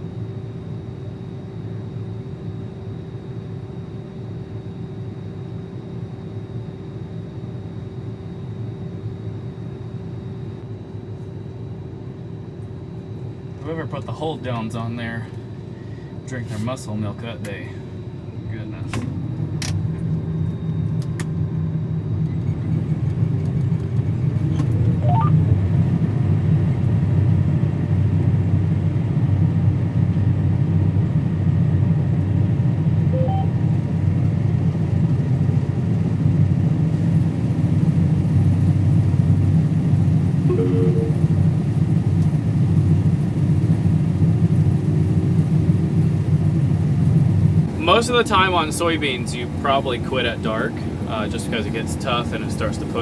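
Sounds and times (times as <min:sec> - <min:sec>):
combine harvester drone: 0:00.0 - 0:53.0
short rising whine: 0:40.4 - 0:41.8.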